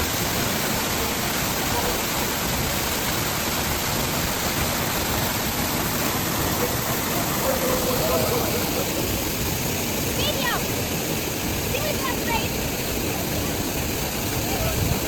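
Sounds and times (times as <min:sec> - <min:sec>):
waterfall rushing: 0:00.0 - 0:15.0
faint voices: 0:06.5 - 0:09.4, 0:11.7 - 0:15.0.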